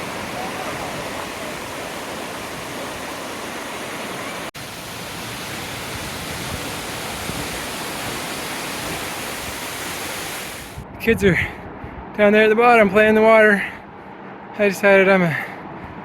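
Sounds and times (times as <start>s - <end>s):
waterfall rushing: 0.0s - 10.8s.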